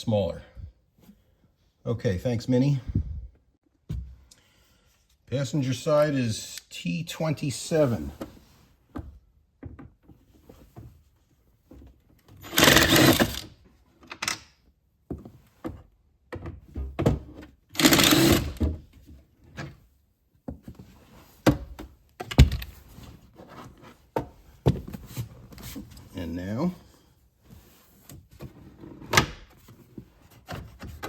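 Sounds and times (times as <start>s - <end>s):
power driver running: 17.8s - 18.6s.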